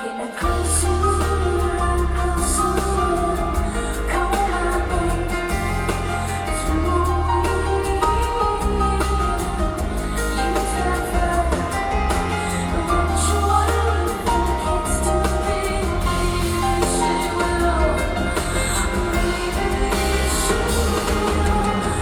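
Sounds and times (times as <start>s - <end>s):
live band music: 0.0s - 22.0s
woman singing: 0.0s - 22.0s
heavy bass: 0.4s - 22.0s.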